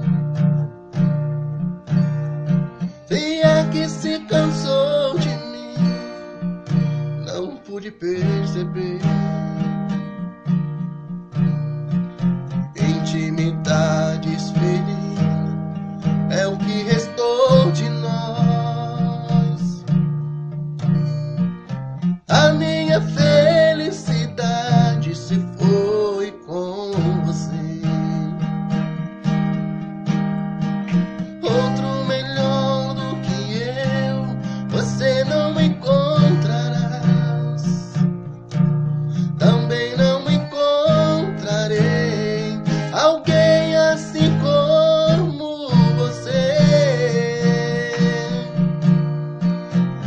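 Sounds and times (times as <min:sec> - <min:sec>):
strummed acoustic guitar: 0:00.0 - 0:50.0
person singing: 0:03.1 - 0:06.2, 0:07.2 - 0:09.8, 0:12.6 - 0:15.7, 0:16.3 - 0:19.8, 0:22.3 - 0:28.5, 0:30.9 - 0:38.0, 0:39.1 - 0:48.7.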